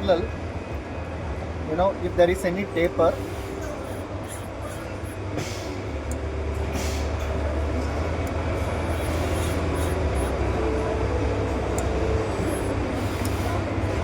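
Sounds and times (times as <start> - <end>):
low machinery hum: 0.0 - 14.0
short hisses: 3.1 - 5.9, 6.7 - 7.3.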